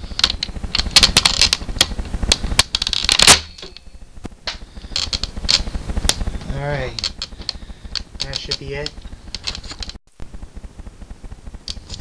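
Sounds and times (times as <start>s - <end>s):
airsoft gun clicking and rattling: 0.1s - 3.8s, 4.9s - 6.2s, 6.9s - 10.0s.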